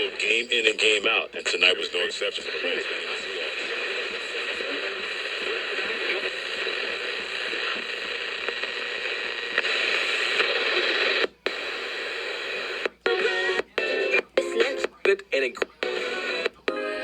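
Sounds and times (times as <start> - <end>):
radio static hiss: 0.0 - 17.0.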